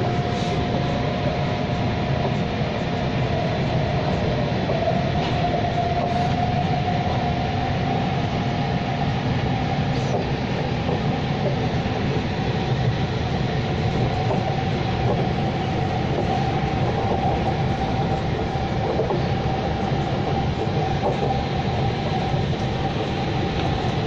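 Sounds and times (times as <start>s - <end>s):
train wheels rumbling on rails: 0.0s - 24.0s
electric train motor whine: 11.7s - 24.0s.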